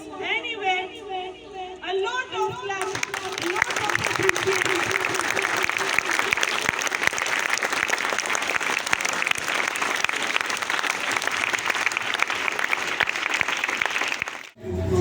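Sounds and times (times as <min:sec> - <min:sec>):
audience applause: 0:02.8 - 0:14.6.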